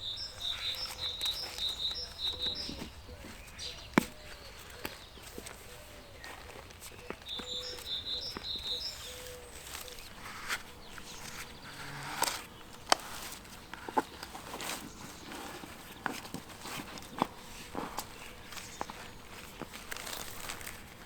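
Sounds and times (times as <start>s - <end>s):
bird chirps: 0.0s - 13.0s.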